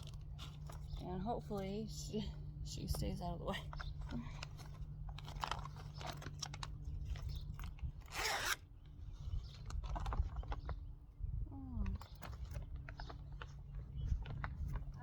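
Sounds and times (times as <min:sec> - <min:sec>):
plastic bag crinkling: 0:04.0 - 0:07.5.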